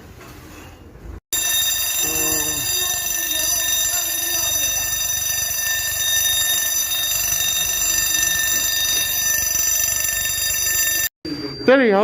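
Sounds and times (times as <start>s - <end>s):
fire alarm sounder steady tone: 1.3s - 12.0s.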